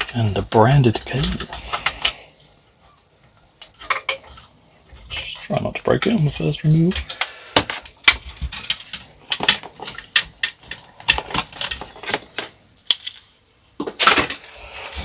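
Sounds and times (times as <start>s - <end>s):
plastic and metal parts rattling: 0.0s - 2.2s, 3.6s - 5.4s, 6.4s - 15.0s.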